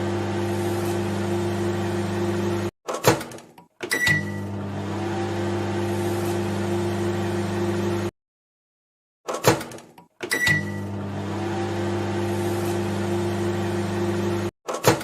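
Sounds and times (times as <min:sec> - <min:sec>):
microwave oven humming: 0:00.0 - 0:02.7, 0:04.0 - 0:08.1, 0:10.4 - 0:14.5.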